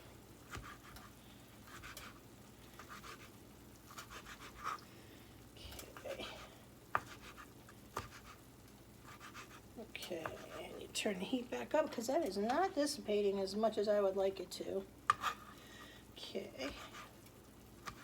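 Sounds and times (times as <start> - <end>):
knife scraping cutting board: 0.5 - 1.1, 1.7 - 2.2, 2.8 - 3.3, 3.9 - 4.8, 7.0 - 8.4, 9.1 - 9.6, 15.1 - 15.6
knife tapping: 7.0 - 7.4.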